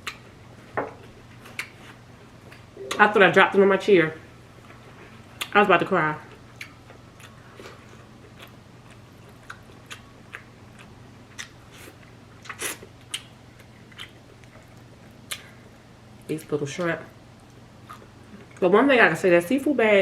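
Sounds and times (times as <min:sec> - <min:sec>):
person chewing with crunches: 0:06.3 - 0:15.8, 0:17.4 - 0:18.6.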